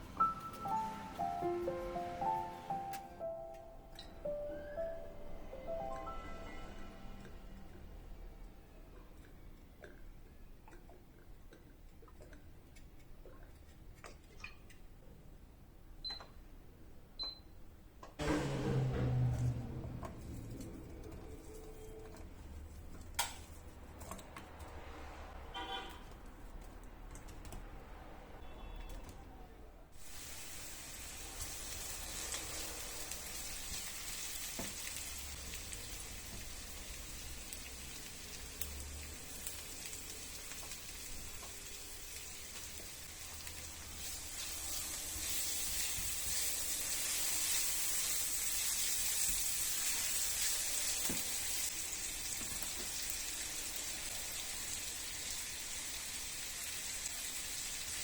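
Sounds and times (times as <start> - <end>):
food sizzling in hot pan: 30.0 - 58.0.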